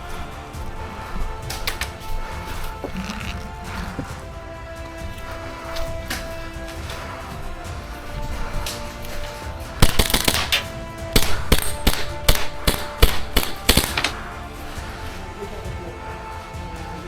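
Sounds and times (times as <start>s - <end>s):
airsoft guns firing: 8.4s - 15.3s.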